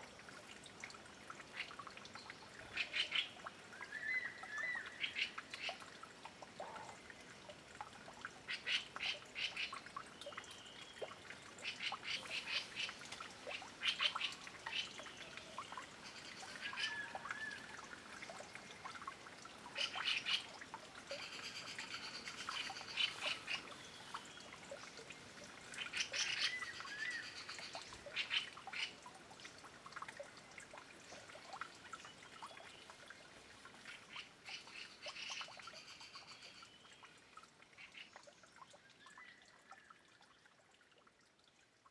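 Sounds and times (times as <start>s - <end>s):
birds splashing in water: 7.8s - 36.2s.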